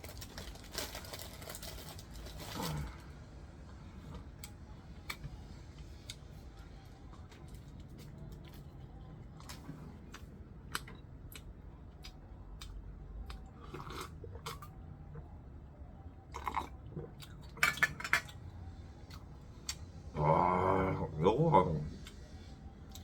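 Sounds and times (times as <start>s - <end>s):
person chewing: 7.1s - 15.2s, 16.3s - 17.7s.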